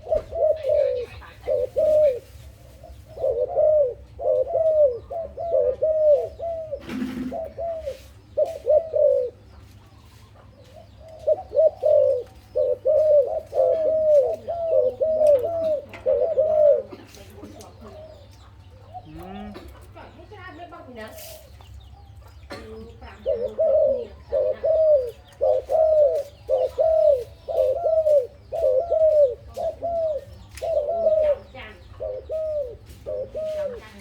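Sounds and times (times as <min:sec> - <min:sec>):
dove cooing: 0:00.0 - 0:21.5, 0:22.1 - 0:34.0.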